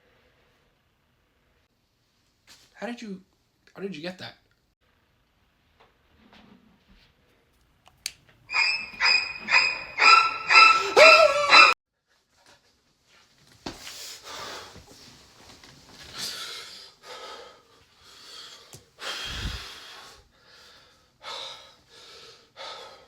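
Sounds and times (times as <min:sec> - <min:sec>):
person gasping for breath: 0:19.0 - 0:23.0.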